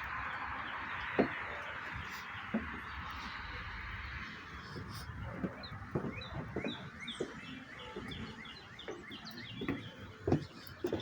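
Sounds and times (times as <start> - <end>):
songbird chirping: 0.0 - 11.0.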